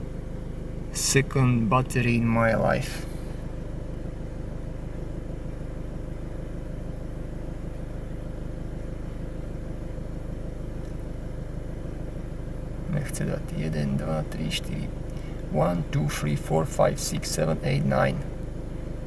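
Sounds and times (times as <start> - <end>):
car engine idling: 0.0 - 19.0.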